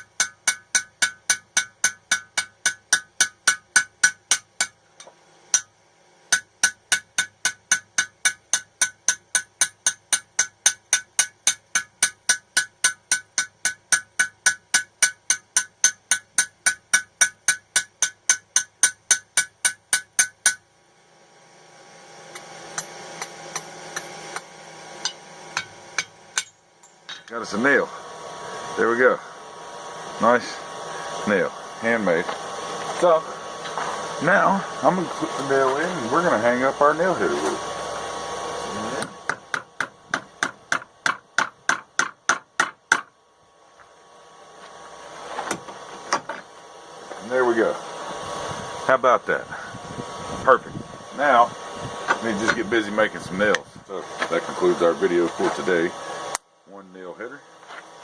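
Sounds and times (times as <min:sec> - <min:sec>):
hammer blows on anvil: 0:00.0 - 0:05.7
hammer driving a nail: 0:00.0 - 0:05.7, 0:06.3 - 0:20.6, 0:39.0 - 0:43.1
rising hiss: 0:27.4 - 0:39.2, 0:44.8 - 0:56.4.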